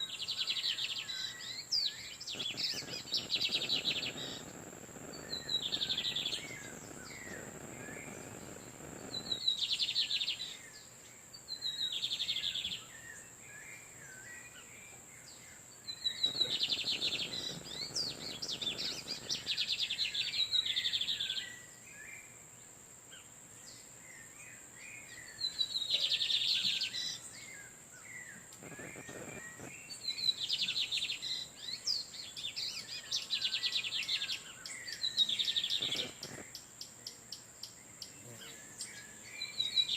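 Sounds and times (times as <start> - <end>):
soft bird chirps: 0.0 - 22.3, 23.1 - 39.9
birds singing buzzy trills: 0.0 - 22.4, 23.1 - 39.9
steady high-pitched tone: 2.3 - 9.4.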